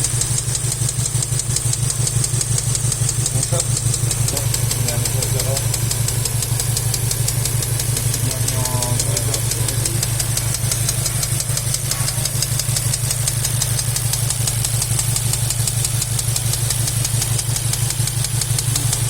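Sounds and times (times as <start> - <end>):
car engine idling with clacking: 0.0 - 19.0.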